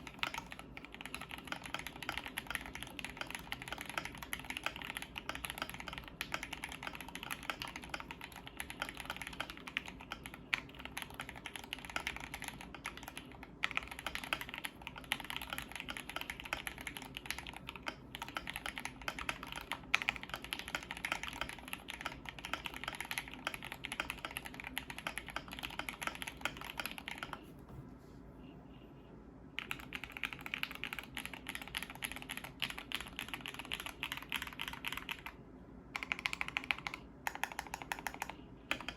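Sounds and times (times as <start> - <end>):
fast mechanical keyboard typing: 0.0 - 27.4, 29.6 - 38.9.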